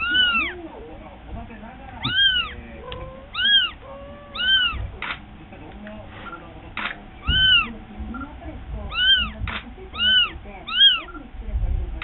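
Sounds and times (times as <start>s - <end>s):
kitten meowing: 0.0s - 0.6s, 2.0s - 4.9s, 7.2s - 7.7s, 8.9s - 11.2s.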